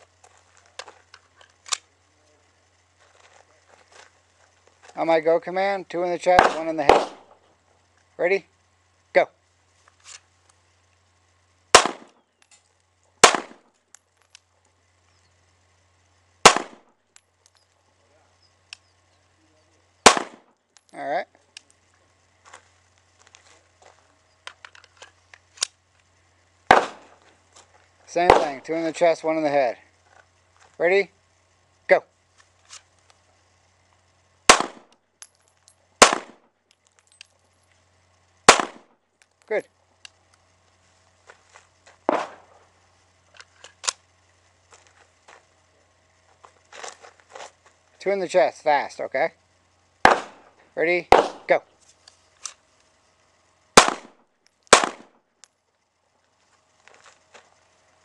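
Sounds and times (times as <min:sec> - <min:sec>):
pistol shots: 0:06.3 - 0:07.4, 0:11.7 - 0:12.2, 0:13.2 - 0:13.7, 0:16.4 - 0:16.8, 0:20.0 - 0:20.5, 0:26.7 - 0:27.2, 0:28.2 - 0:28.8, 0:34.5 - 0:35.0, 0:36.0 - 0:36.4, 0:38.5 - 0:38.9, 0:42.1 - 0:42.6, 0:50.0 - 0:50.5, 0:51.1 - 0:51.6, 0:53.8 - 0:55.1.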